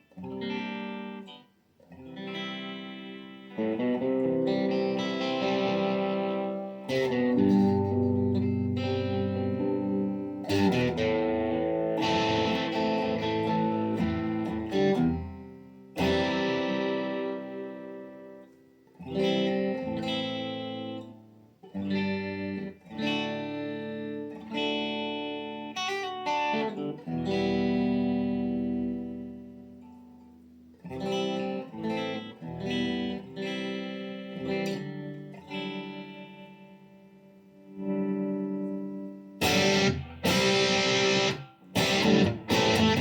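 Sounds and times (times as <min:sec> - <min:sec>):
electric guitar chords: 0:00.0 - 0:43.0.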